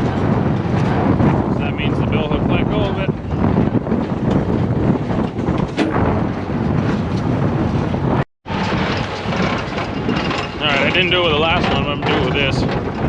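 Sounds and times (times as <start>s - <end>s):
wind buffeting microphone: 0.0s - 13.0s
tractor and baler running: 8.5s - 12.5s.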